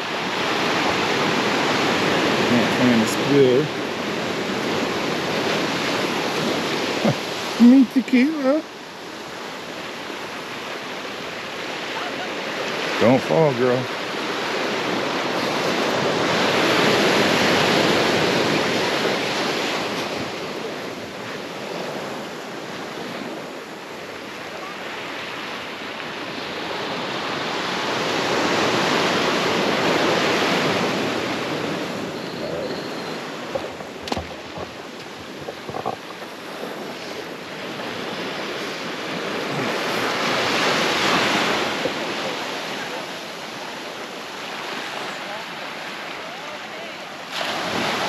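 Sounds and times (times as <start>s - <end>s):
waves breaking on sandy beach: 0.0s - 48.0s.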